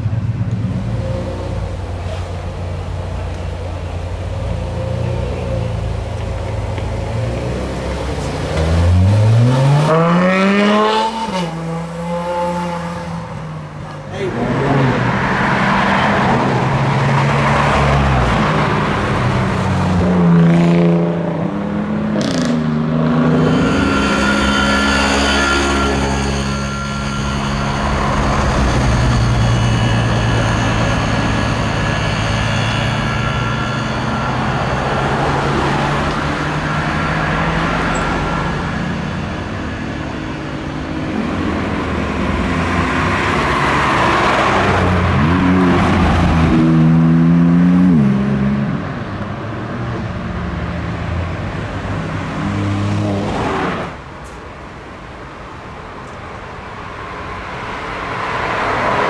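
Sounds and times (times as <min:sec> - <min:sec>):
car engines passing: 0:00.0 - 0:59.0
engine throttle blips: 0:22.1 - 0:46.9.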